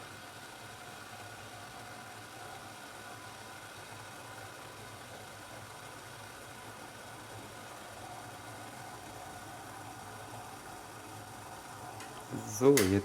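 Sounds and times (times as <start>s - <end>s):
even hiss: 12.0s - 13.0s.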